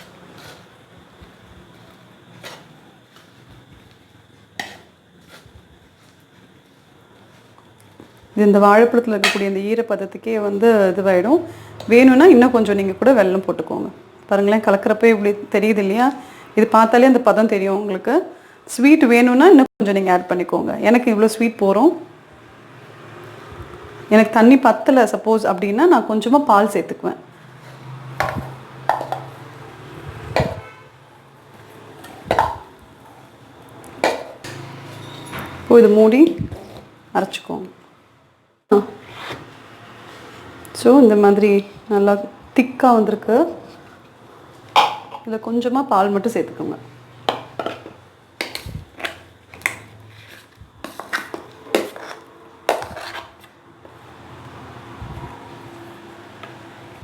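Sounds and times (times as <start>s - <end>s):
utensil knocking kitchen vessels: 28.2s - 29.3s, 44.8s - 45.4s
spoon scraping metal vessel: 50.0s - 53.5s.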